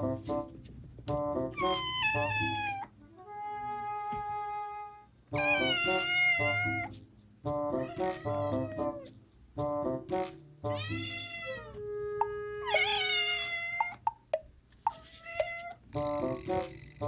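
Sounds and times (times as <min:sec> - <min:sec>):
light background music: 0:00.0 - 0:17.0
kittens meowing: 0:01.6 - 0:02.9, 0:05.4 - 0:06.9, 0:07.8 - 0:09.0, 0:10.7 - 0:14.0.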